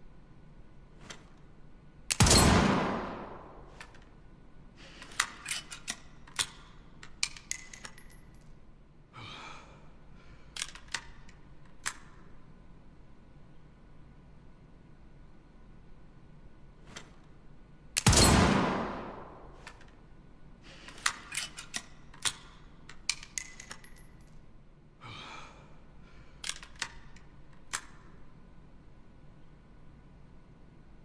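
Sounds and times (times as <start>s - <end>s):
pistol shot: 2.1s - 3.7s, 18.0s - 19.6s
gun action clicks: 26.4s - 28.0s.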